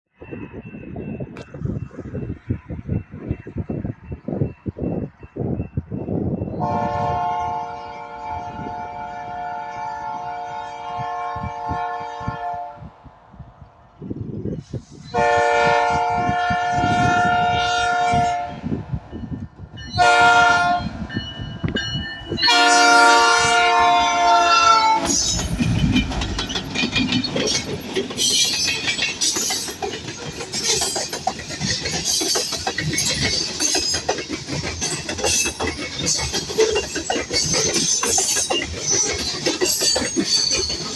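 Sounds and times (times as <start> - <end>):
locomotive rumbling: 0.2 - 40.9
locomotive air horn: 6.6 - 12.9, 15.1 - 18.7, 20.0 - 21.0, 22.3 - 25.4
wheels clattering over rail joints: 21.1 - 40.9.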